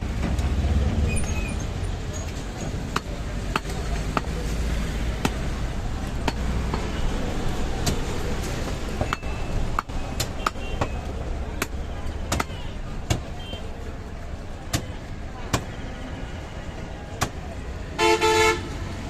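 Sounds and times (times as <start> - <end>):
street traffic: 0.0 - 19.0
cleaver chopping on a block: 2.9 - 4.4, 11.6 - 13.3, 14.7 - 15.7.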